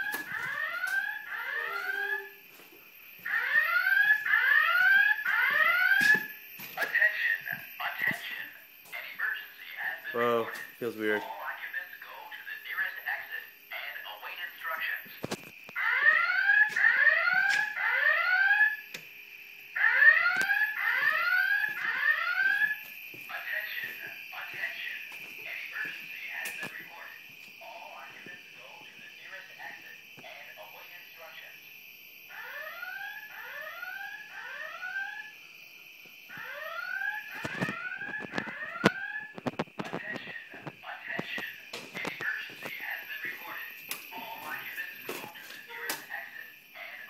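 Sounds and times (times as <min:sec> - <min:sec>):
fire alarm whoop tone: 0:00.0 - 0:11.9, 0:12.6 - 0:47.0
steady high whine: 0:35.3 - 0:47.0.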